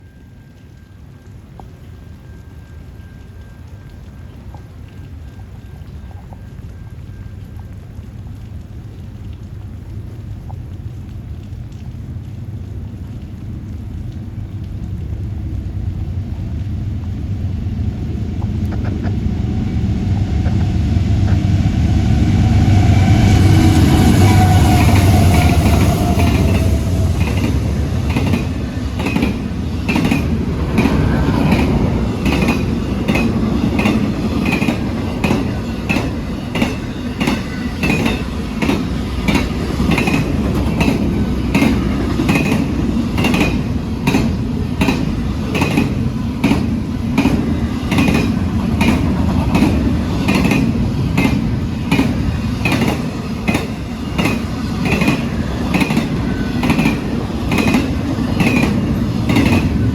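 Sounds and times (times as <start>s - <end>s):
low train rumble: 0.0s - 59.9s
train wheels clacking over rail joints: 24.1s - 59.9s.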